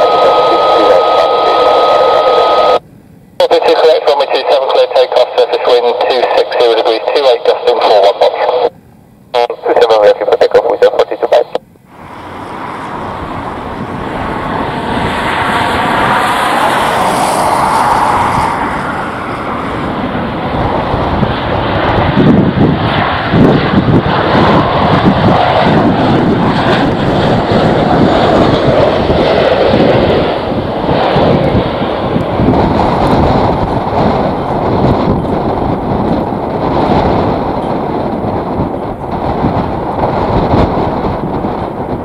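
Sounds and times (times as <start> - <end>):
jet engine whine: 0.0 - 42.0
jet engines rumbling: 0.0 - 42.0
wind buffeting microphone: 11.9 - 42.0.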